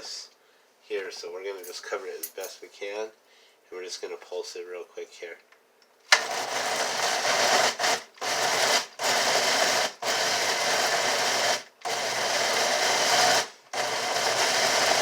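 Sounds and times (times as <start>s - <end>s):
blender pulsing: 6.1s - 15.0s.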